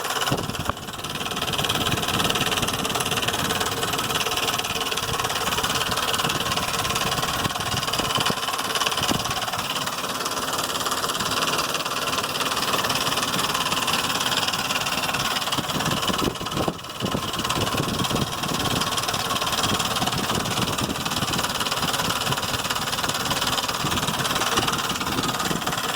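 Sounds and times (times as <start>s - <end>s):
car engine idling: 0.0s - 25.9s
engine knocking and ticking: 0.0s - 25.9s.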